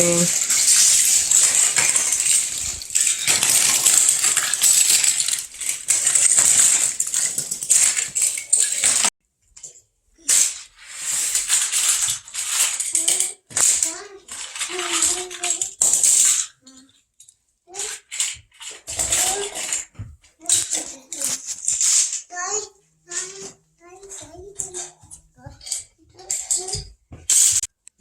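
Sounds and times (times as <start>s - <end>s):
toy cars clattering together: 0.0s - 27.9s.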